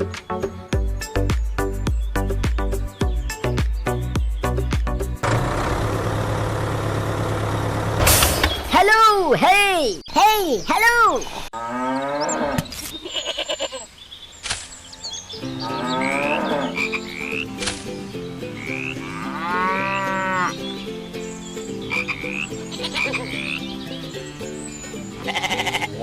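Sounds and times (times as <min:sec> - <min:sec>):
animal-like calls: 0:21.9 - 0:23.7.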